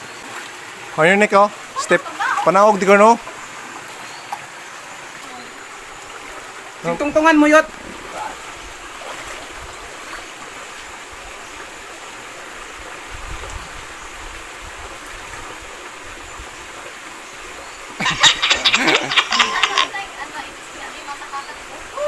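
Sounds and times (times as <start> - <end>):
stream running over rocks: 0.0 - 22.0.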